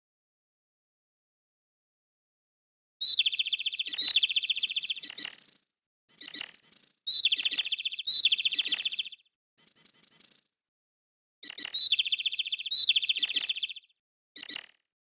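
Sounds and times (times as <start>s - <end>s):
bird-like phone ringtone: 3.0s - 9.0s, 11.4s - 13.8s, 14.4s - 14.8s.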